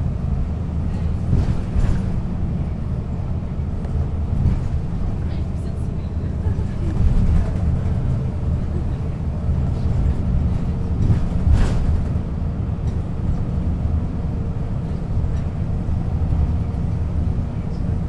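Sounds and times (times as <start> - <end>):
bus diesel engine droning: 0.0 - 18.0.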